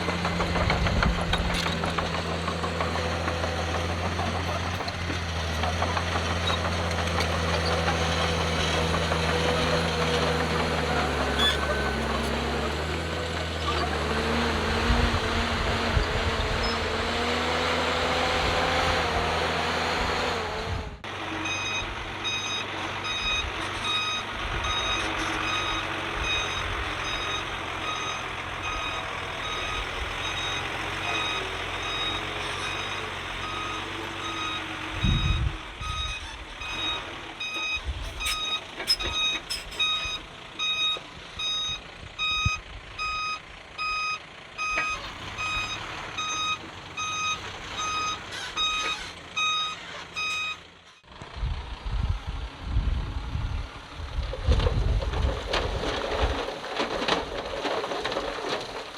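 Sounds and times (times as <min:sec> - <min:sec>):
knocks and clunks: 0:00.0 - 0:19.1, 0:22.4 - 0:41.7
diesel engine rumble: 0:00.0 - 0:58.9
loud engine: 0:00.0 - 0:58.9
reversing alarm beeping: 0:21.4 - 0:50.6.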